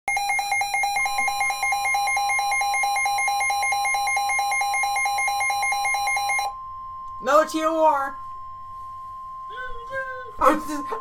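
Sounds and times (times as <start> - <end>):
fast electronic beeping: 0.1 - 6.5
steady warning alarm tone: 0.1 - 11.0.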